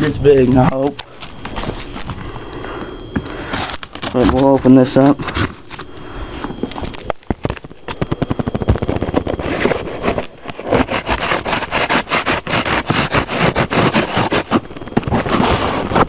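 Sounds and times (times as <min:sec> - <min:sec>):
cardboard box being torn open: 0:08.8 - 0:16.0.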